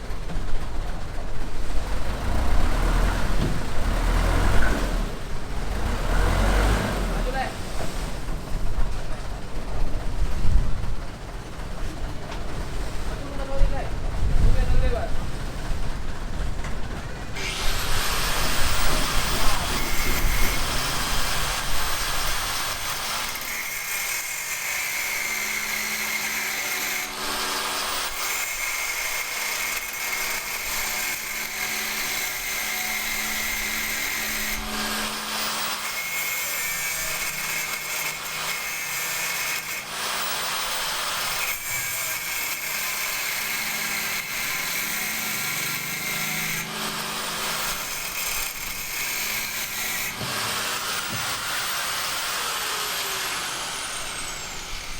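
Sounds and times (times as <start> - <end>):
power tool motor running: 17.4 - 54.9.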